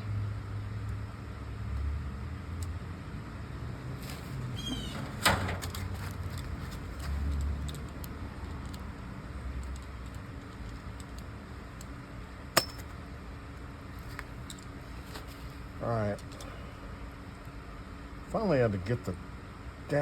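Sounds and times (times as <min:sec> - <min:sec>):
low steady hum: 0:00.0 - 0:20.0
brief squeak: 0:04.5 - 0:05.5
sharp metallic clanks: 0:12.5 - 0:13.0.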